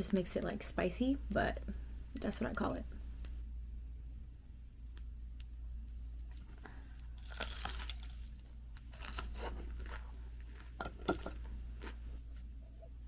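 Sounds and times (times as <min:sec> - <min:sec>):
crunching bites of fritters: 0:06.2 - 0:10.8.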